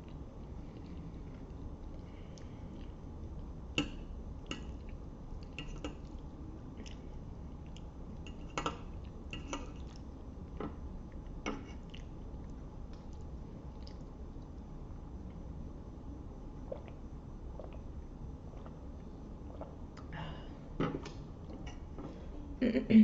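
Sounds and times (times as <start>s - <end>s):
wet squishing of noodles: 4.4s - 15.4s.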